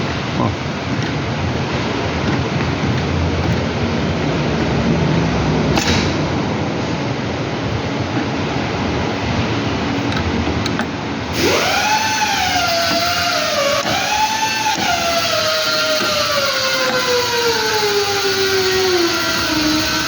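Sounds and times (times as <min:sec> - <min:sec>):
power tool whining: 0:10.6 - 0:20.0.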